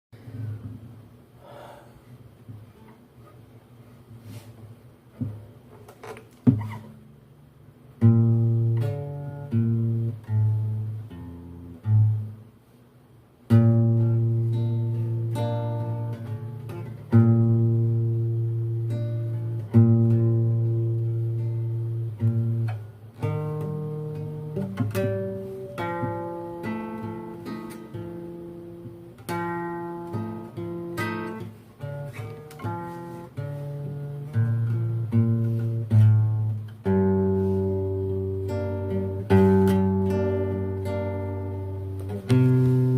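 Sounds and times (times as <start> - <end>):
acoustic guitar chords strummed: 7.9 - 12.5, 13.4 - 42.9.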